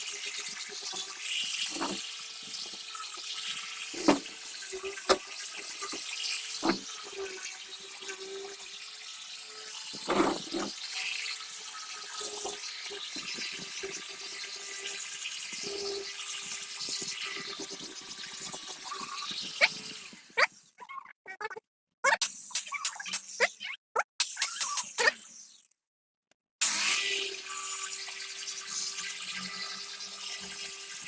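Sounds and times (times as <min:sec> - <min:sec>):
water running: 0:00.0 - 0:10.9.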